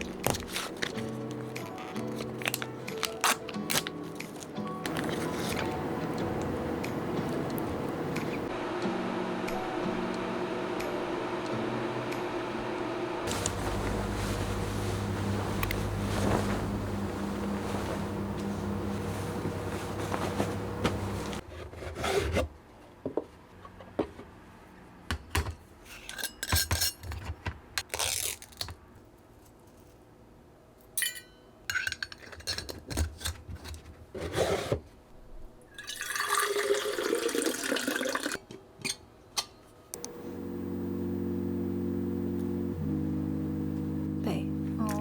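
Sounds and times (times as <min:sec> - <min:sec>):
steady hum: 0:04.9 - 0:21.4, 0:40.0 - 0:45.0
rubbing sounds: 0:13.3 - 0:21.4
dishes and utensils clinking: 0:31.0 - 0:33.1
running water: 0:35.8 - 0:38.4.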